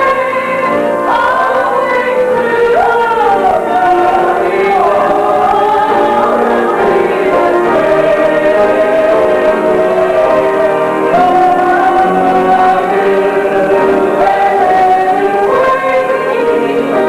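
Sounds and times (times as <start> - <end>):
person singing long notes: 0.0 - 17.0
sustained accompaniment: 0.0 - 17.0.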